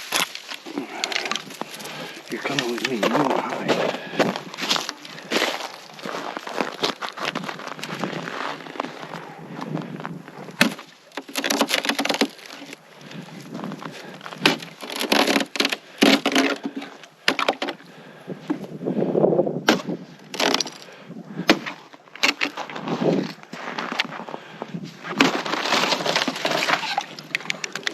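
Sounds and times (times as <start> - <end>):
footsteps crunching in snow: 1.4 - 10.2, 22.5 - 26.6.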